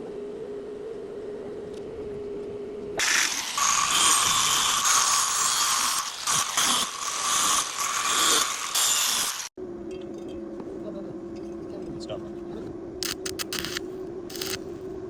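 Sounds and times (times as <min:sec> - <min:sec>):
low steady hum: 0:00.0 - 0:05.4
harsh mechanical rattling: 0:03.0 - 0:09.5.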